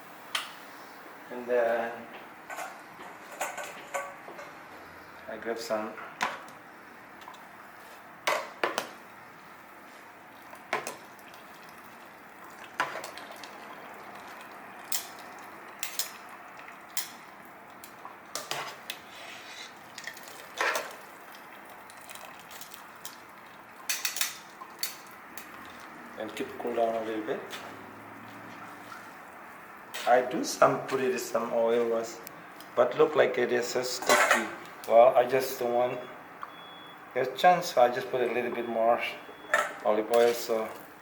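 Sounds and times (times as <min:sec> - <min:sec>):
low steady hiss: 0:00.0 - 0:41.0
metal utensils clinking: 0:14.8 - 0:16.3, 0:23.9 - 0:25.6, 0:34.0 - 0:34.6.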